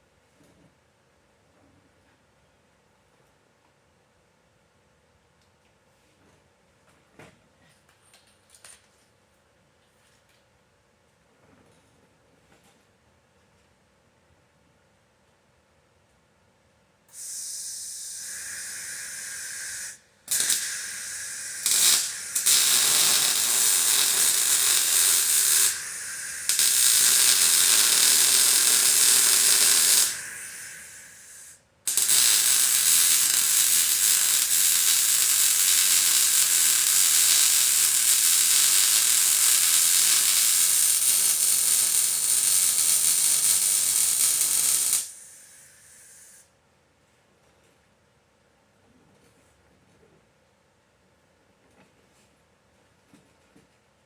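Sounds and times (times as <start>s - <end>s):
welding arc hissing and crackling: 17.1s - 46.4s.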